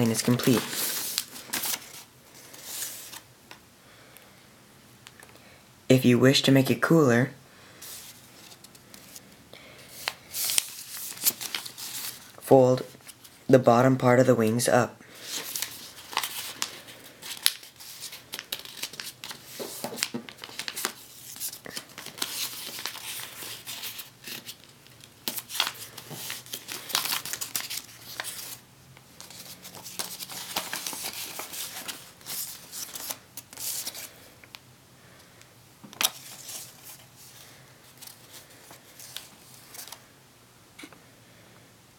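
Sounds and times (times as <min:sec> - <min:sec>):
paper rustling and crackling: 0:00.0 - 0:03.3, 0:09.9 - 0:13.4, 0:15.2 - 0:28.6, 0:29.2 - 0:34.2, 0:35.9 - 0:40.1.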